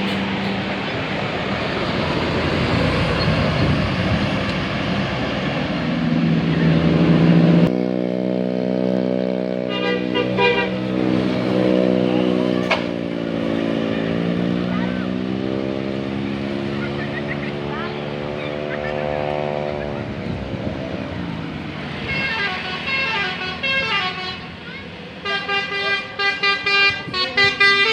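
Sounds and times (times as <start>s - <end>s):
bus musical horn playing tune: 9.5s - 13.9s, 21.9s - 27.9s.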